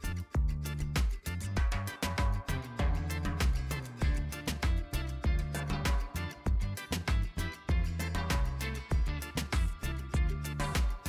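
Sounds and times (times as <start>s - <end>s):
music with drums and bass: 0.0s - 11.0s.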